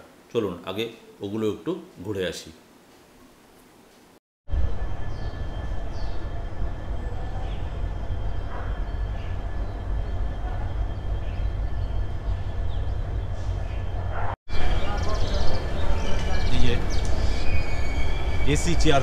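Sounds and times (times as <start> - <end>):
train machinery rumbling: 4.5 - 19.0.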